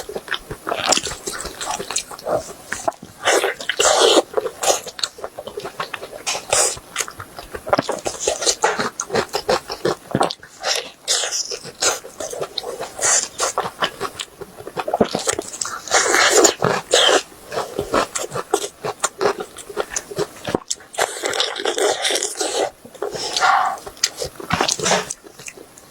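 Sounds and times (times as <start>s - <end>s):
person chewing wet mouth smacking: 0.0s - 25.9s.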